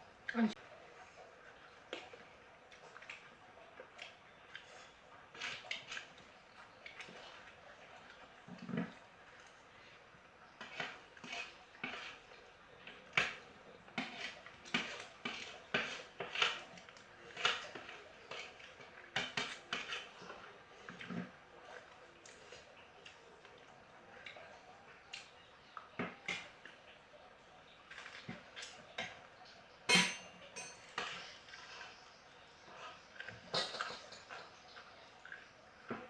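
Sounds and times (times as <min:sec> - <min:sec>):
cutlery clinking on a plate: 0:29.9 - 0:31.3, 0:33.5 - 0:34.5.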